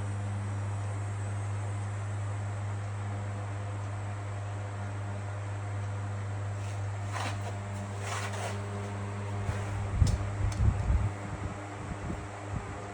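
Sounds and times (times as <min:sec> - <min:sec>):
low machine hum: 0:00.0 - 0:12.9
rubbing or rustling: 0:06.6 - 0:09.9.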